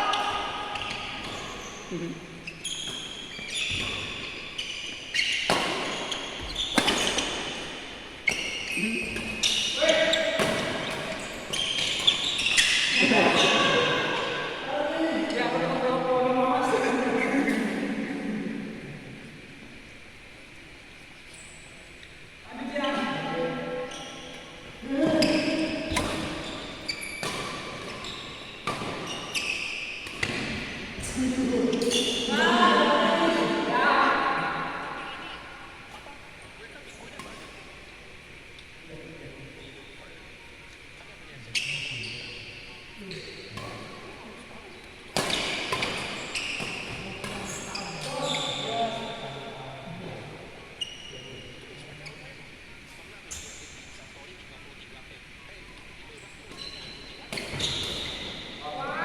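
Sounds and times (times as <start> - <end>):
shoes squeaking on court floor: 0.0 - 15.6, 21.2 - 34.2, 41.4 - 49.7, 50.6 - 54.2, 55.6 - 58.8
racket hitting shuttlecock: 5.3 - 7.7, 28.6 - 31.2.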